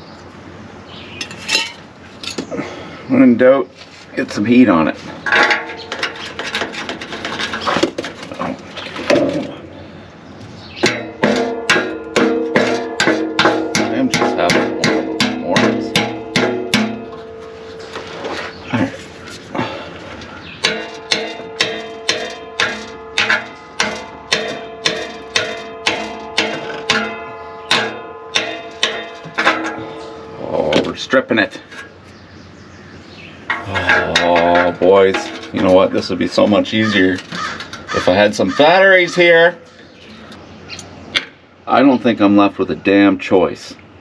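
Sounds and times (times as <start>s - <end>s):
hand tools clinking on metal: 1.2s - 2.5s, 20.6s - 31.9s, 33.5s - 38.2s
hammer ringing on metal: 10.8s - 18.0s, 20.5s - 30.8s.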